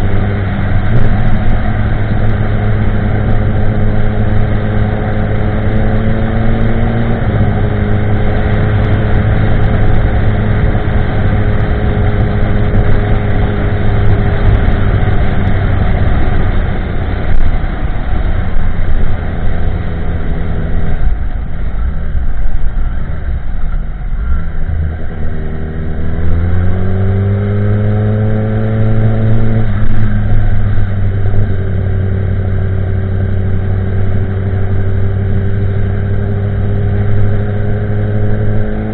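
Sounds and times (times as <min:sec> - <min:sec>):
motorcycle engine: 0:00.0 - 0:38.9.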